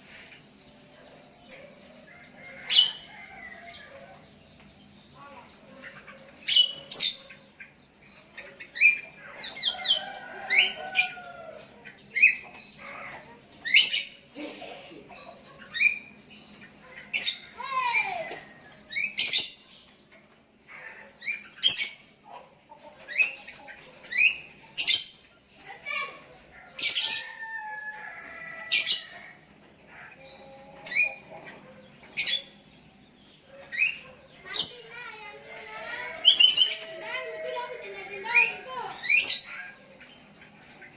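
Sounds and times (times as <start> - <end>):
birds calling high notes: 15.1 - 40.9.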